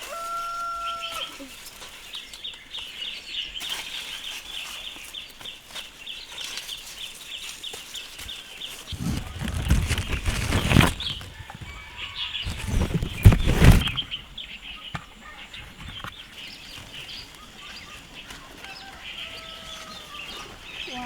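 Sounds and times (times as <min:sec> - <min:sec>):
faint chicken clucks and chirps: 0:00.0 - 0:21.0
loud rustling bursts: 0:08.7 - 0:14.5.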